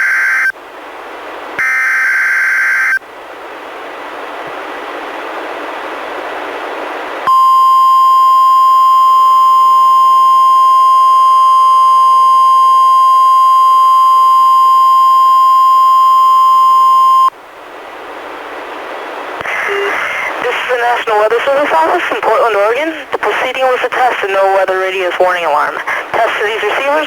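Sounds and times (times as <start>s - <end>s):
steady high alarm tone: 1.6s - 3.0s.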